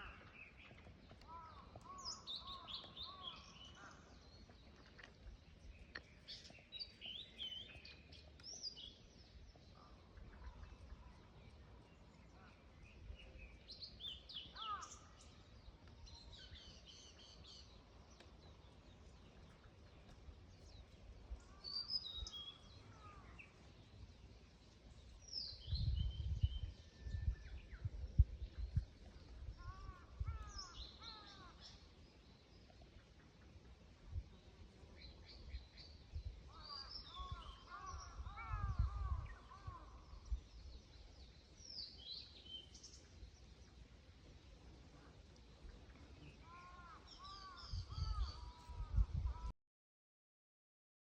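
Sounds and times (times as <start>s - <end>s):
bird singing warbled phrases: 0.0s - 24.0s, 27.7s - 32.4s, 34.9s - 43.6s, 46.2s - 49.5s.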